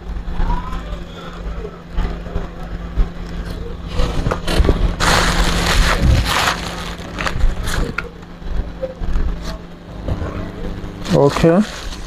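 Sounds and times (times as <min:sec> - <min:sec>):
small parts rummaged by hand: 0:04.0 - 0:08.1.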